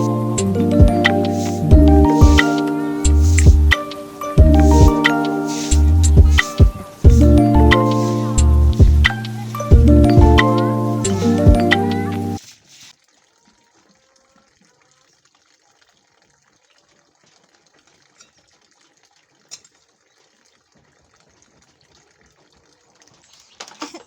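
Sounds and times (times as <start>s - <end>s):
faint background hiss: 0.0s - 13.0s.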